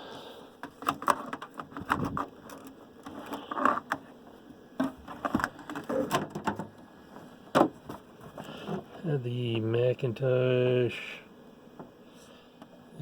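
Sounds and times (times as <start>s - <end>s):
hard objects knocking and clicking: 0.6s - 4.1s, 4.8s - 6.8s.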